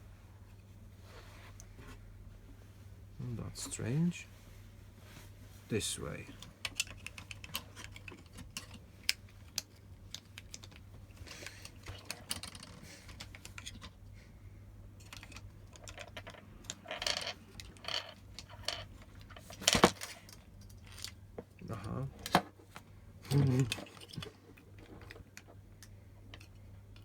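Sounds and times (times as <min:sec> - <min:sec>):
light clicks and taps of plastic parts: 0:06.2 - 0:14.2, 0:15.0 - 0:27.0.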